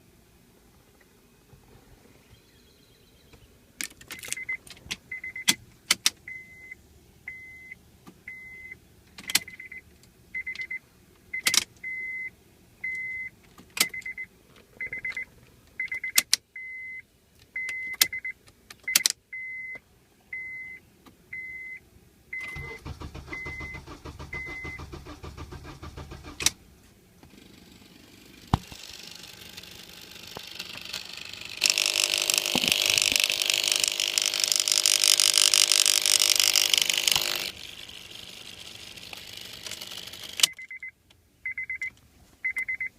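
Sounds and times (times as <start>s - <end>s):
car warning chime beeping: 4.2s - 5.5s, 6.3s - 8.8s, 9.4s - 9.8s, 10.4s - 17.0s, 17.6s - 25.0s, 40.4s - 42.9s
low mechanical whirr: 20.2s - 40.8s
key and ignition clicks: 38.8s - 40.9s.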